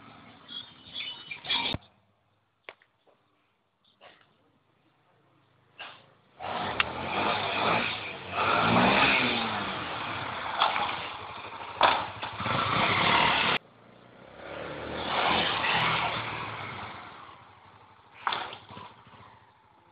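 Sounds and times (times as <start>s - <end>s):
motorcycle engine revving: 6.4s - 19.9s.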